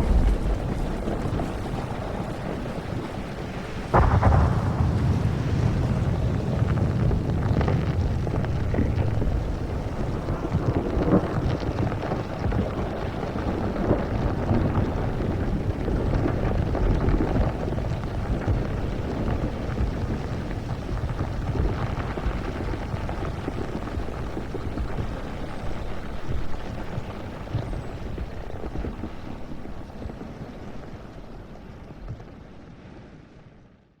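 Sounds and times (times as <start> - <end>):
deep volcanic rumble: 0.0 - 32.6
dense crackle: 0.0 - 33.0
low thumps: 4.0 - 11.0.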